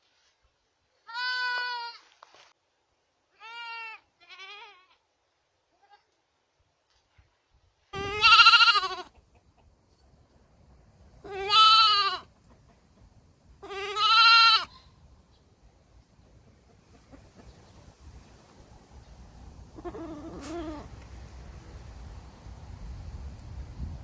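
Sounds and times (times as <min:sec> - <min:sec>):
baby goat bleating: 0:01.1 - 0:02.0, 0:03.4 - 0:05.0, 0:08.0 - 0:09.1, 0:11.2 - 0:12.3, 0:13.6 - 0:15.0, 0:19.7 - 0:20.9.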